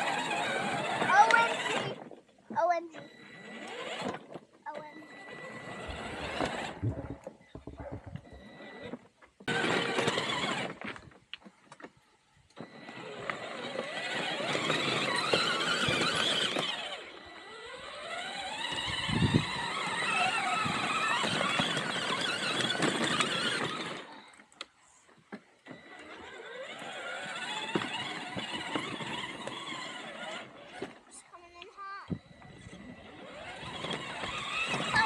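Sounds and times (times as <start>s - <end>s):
electric motors whining: 0.0s - 35.0s.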